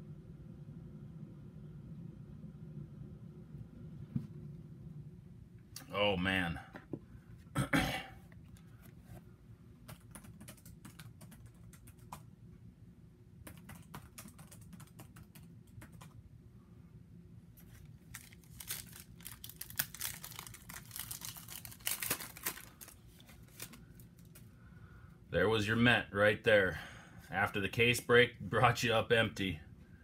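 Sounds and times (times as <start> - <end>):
card pack wrapper crinkling: 17.6 - 24.5.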